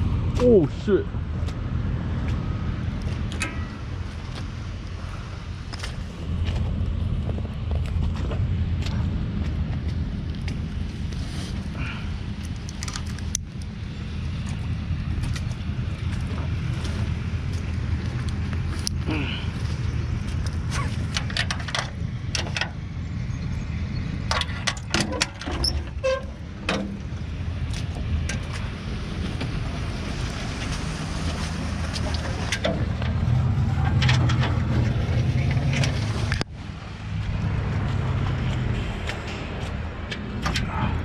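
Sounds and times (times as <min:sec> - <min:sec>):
vehicle engine and road drone: 0:00.0 - 0:41.0
clicks and rattles: 0:20.8 - 0:22.8, 0:33.8 - 0:36.5.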